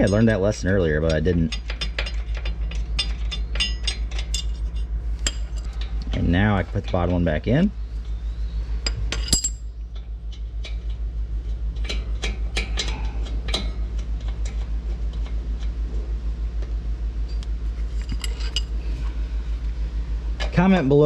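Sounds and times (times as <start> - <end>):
tools clinking against metal: 0.0 - 7.2, 8.9 - 11.0, 17.3 - 18.8.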